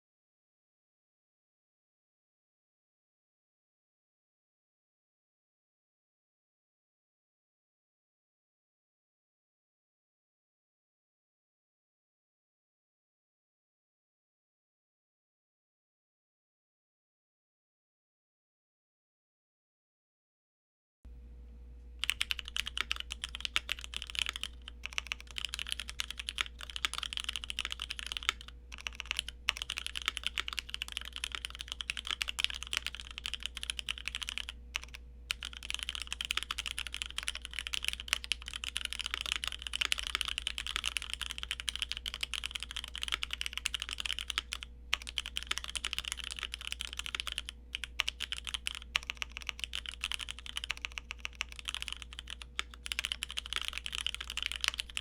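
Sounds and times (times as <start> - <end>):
mechanical keyboard typing: 22.0 - 55.0.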